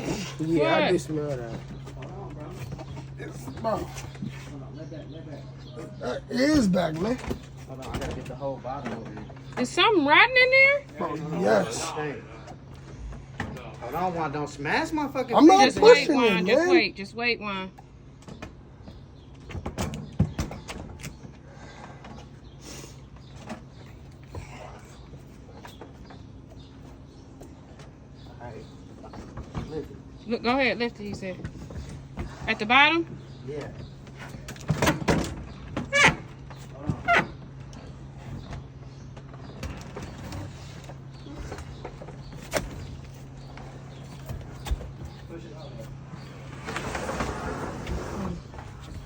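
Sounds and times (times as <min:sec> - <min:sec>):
refrigerator knocks bumps and creaks: 0:06.4 - 0:09.6, 0:18.2 - 0:21.3, 0:33.5 - 0:45.4.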